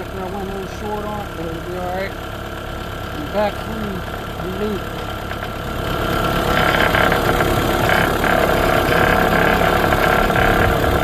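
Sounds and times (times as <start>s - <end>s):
engine idling: 0.0s - 11.0s.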